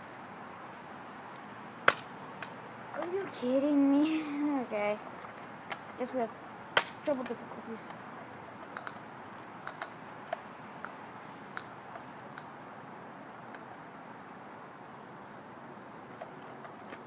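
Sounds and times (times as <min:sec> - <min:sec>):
faint steady hiss: 0:00.0 - 0:17.0
small plastic clicks: 0:07.1 - 0:12.5, 0:16.1 - 0:17.0.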